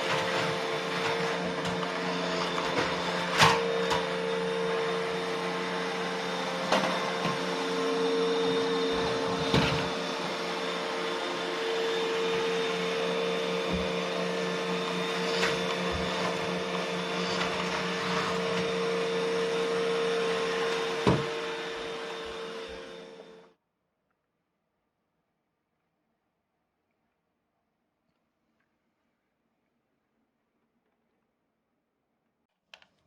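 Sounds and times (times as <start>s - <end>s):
robot vacuum whirring hum: 0.0s - 23.5s.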